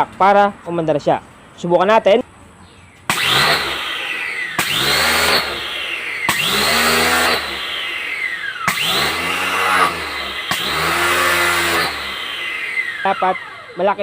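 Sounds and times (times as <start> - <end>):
pressure washer motor surging: 3.1 - 14.0.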